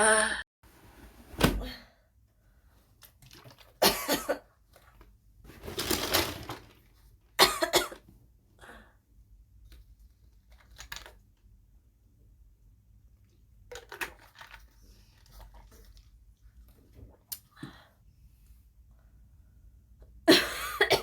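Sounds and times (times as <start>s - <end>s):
woman coughing: 3.8s - 4.5s, 7.4s - 8.0s, 20.3s - 21.0s.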